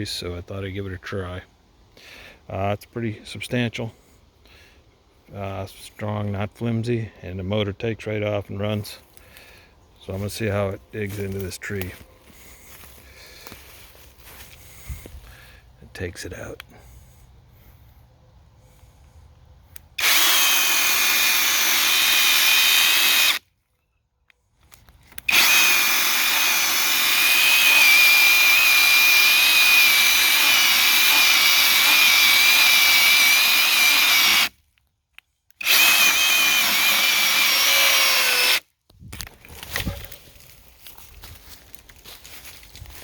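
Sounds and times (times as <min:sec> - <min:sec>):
electric chainsaw cutting wood: 0:19.8 - 0:23.4, 0:25.1 - 0:34.6, 0:35.6 - 0:38.7.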